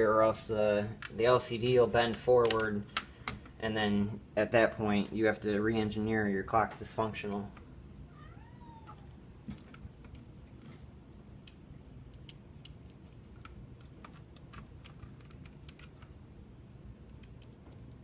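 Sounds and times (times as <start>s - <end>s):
small parts clicking and tapping: 9.5s - 16.2s, 17.0s - 18.0s.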